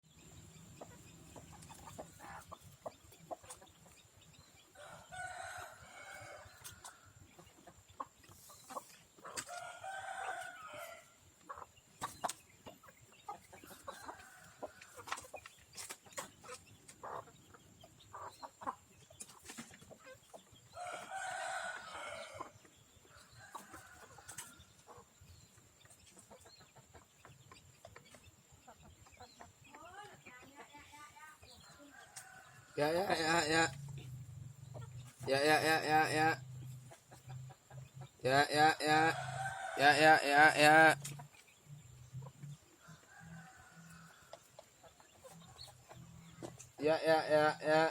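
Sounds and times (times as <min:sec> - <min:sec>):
hens clucking: 0:00.2 - 0:47.9
roosters crowing: 0:04.7 - 0:07.3, 0:09.3 - 0:11.4, 0:13.6 - 0:15.3, 0:20.6 - 0:24.8, 0:31.7 - 0:37.0, 0:38.1 - 0:41.2, 0:42.8 - 0:44.6, 0:46.3 - 0:47.9.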